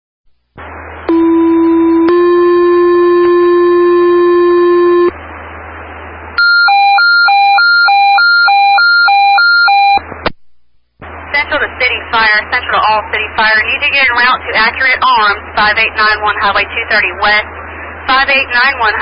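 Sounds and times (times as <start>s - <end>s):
radio hiss: 0.4s - 1.1s, 11.0s - 19.0s.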